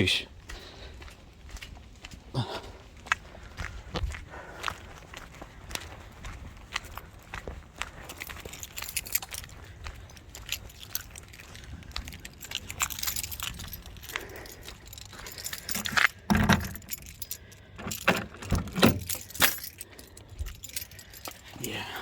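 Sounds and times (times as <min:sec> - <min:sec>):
small metal pieces jingling: 0:08.1 - 0:21.8.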